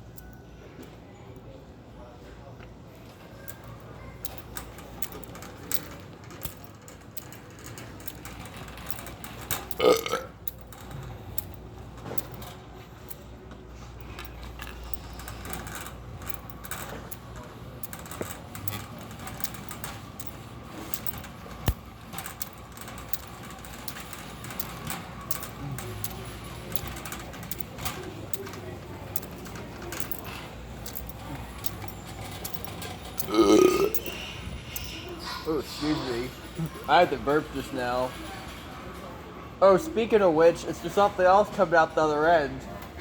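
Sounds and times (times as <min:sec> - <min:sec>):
low background hum: 0:00.0 - 0:43.0
loud burp: 0:09.8 - 0:10.3, 0:33.2 - 0:34.2.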